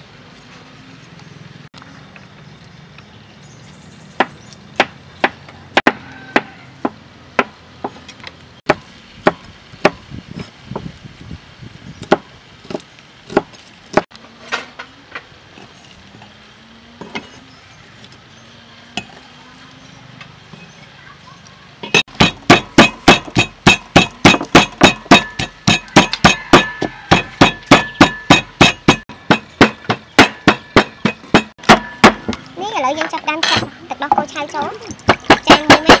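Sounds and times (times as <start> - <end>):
pestle pounding in mortar: 4.2 - 8.0, 8.7 - 10.1, 21.8 - 32.4, 33.5 - 36.0.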